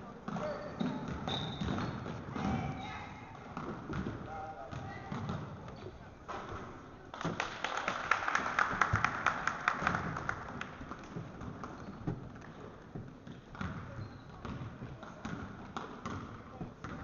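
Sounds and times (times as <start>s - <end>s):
spectators clapping and cheering: 7.1s - 11.2s.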